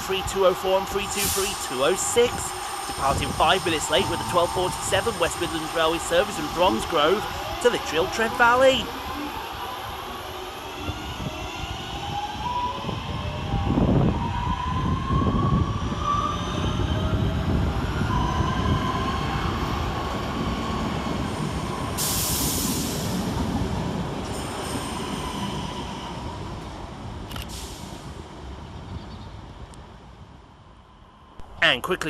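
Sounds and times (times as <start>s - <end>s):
electric train motors whining: 0.0s - 15.8s
rail rumble: 0.0s - 16.0s.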